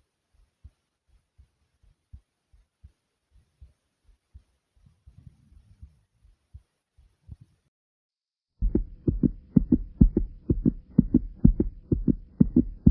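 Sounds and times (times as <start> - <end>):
faint steady hum: 8.6 - 12.9
heartbeat thumps: 8.6 - 12.9.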